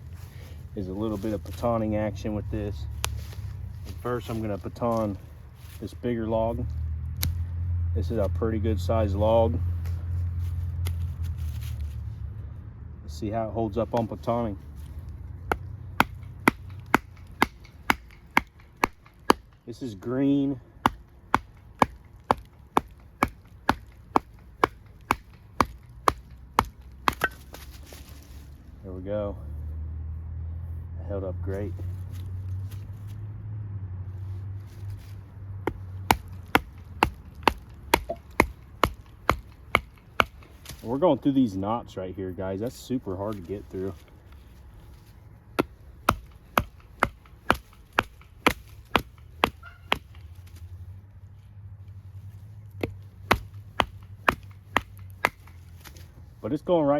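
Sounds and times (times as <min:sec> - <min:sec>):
baton striking knife spine: 0:20.8 - 0:27.7, 0:35.7 - 0:40.8, 0:45.6 - 0:50.6
wooden baton knocking knife: 0:35.7 - 0:40.8.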